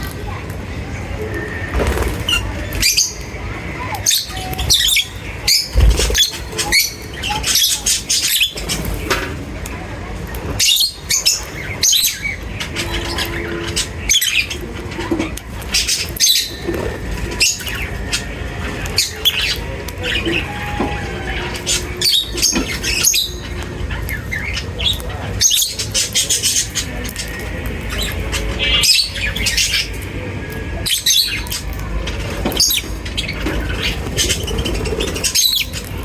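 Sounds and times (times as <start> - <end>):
lovebirds chirping: 1.3 - 9.2, 10.6 - 30.1.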